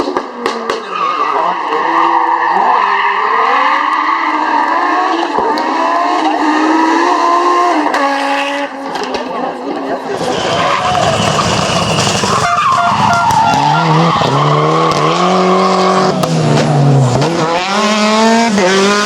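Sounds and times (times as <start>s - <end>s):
rally car engine revving: 0.0s - 19.0s
sharp exhaust cracks: 10.2s - 15.0s.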